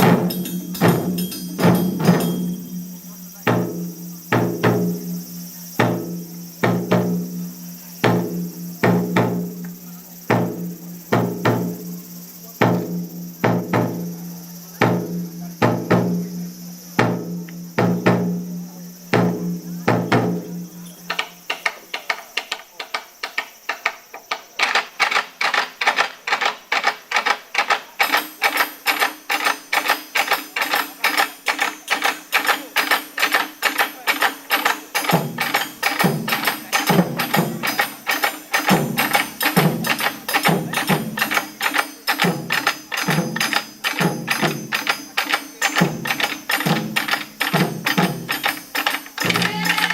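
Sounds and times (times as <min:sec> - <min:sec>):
taiko drums: 0:00.0 - 0:22.6, 0:25.4 - 0:49.9.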